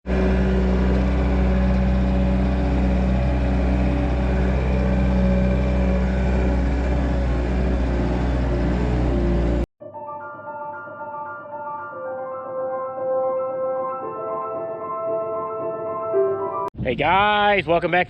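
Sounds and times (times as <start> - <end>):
engine droning steadily: 0.1 - 9.7.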